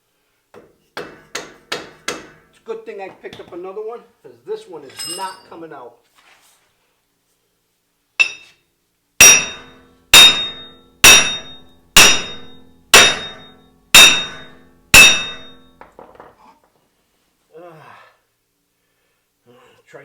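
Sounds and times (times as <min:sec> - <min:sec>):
hammer striking metal: 0:00.6 - 0:02.5, 0:08.2 - 0:08.5, 0:09.2 - 0:15.8
small metal clinks: 0:04.9 - 0:05.6, 0:08.2 - 0:08.5.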